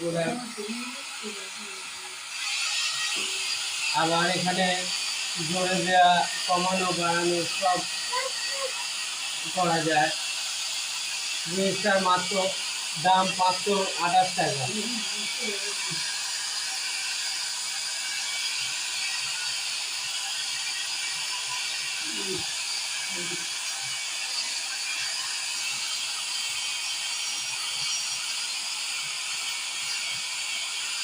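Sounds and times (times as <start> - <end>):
hair dryer running: 0.0 - 31.0.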